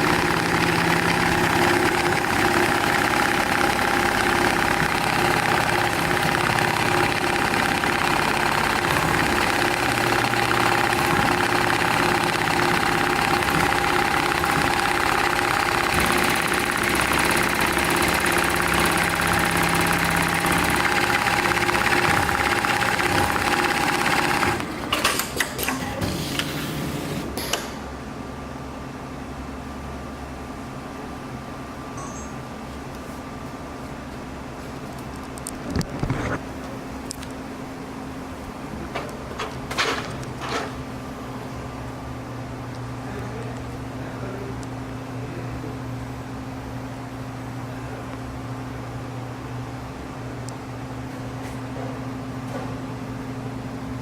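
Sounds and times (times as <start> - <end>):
sewing machine running: 0.0 - 26.5.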